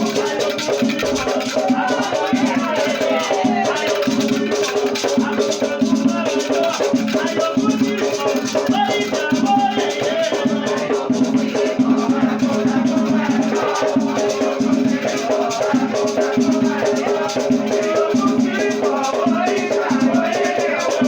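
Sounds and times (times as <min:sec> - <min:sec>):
drumming: 0:00.0 - 0:21.0
shaker rattles: 0:00.0 - 0:21.0
voices singing: 0:00.0 - 0:21.0.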